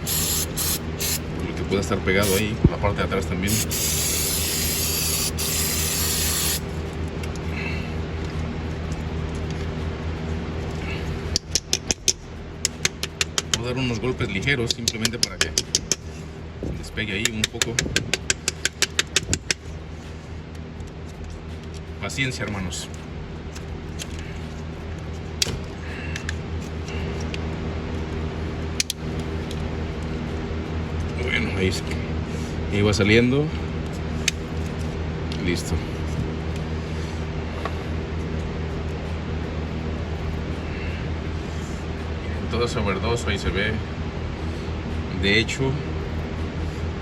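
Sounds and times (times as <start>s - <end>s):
spray hissing: 0.0s - 1.2s, 2.2s - 2.5s, 3.5s - 6.6s
steady low hum: 0.0s - 47.0s
hand tools clicking on plastic: 17.3s - 19.6s.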